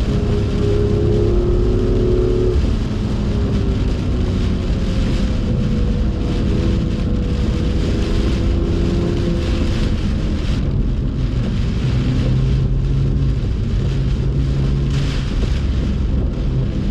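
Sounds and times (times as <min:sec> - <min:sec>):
rain and tyre spray hiss: 0:00.0 - 0:16.9.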